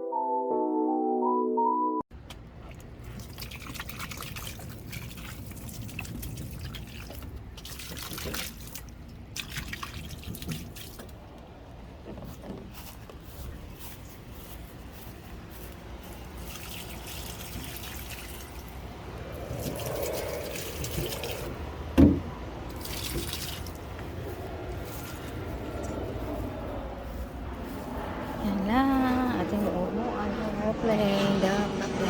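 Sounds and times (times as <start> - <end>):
water dripping and trickling: 2.3 - 11.5, 15.6 - 21.8, 22.6 - 24.0.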